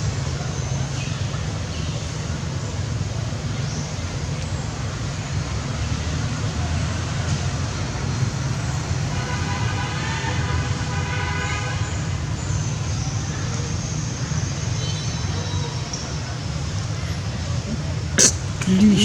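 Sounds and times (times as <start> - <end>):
road traffic rumble: 0.0 - 19.0
vehicle horn: 9.2 - 12.0.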